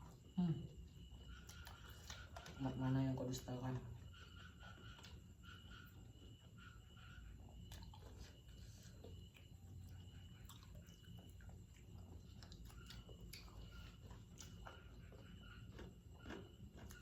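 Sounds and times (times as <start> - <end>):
person chewing: 7.6 - 17.0.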